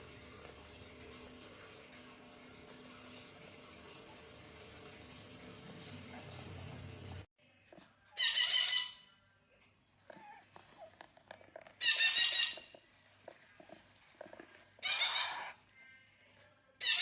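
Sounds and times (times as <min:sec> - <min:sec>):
parrot squawking: 0:08.1 - 0:09.1, 0:11.8 - 0:12.7, 0:14.8 - 0:15.7, 0:16.8 - 0:17.0.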